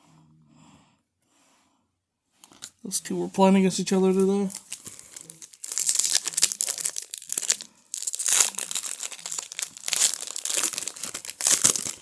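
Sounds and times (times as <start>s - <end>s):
plastic wrapper crinkling and tearing: 4.1s - 12.0s.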